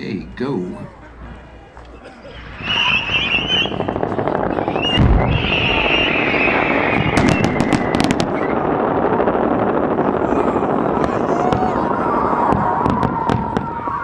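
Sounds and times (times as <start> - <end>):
rockets hissing and whistling: 2.3 - 14.0
sharp pops: 7.0 - 8.5.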